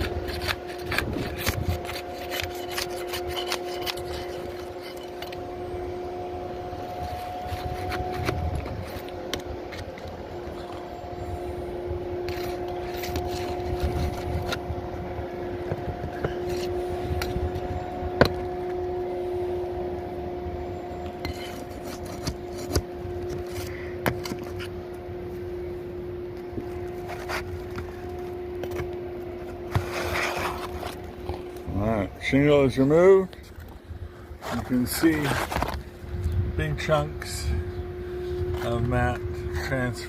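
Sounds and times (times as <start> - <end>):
hand tools prying roof shingle: 0.0 - 5.4
steady humming drone: 0.0 - 40.0.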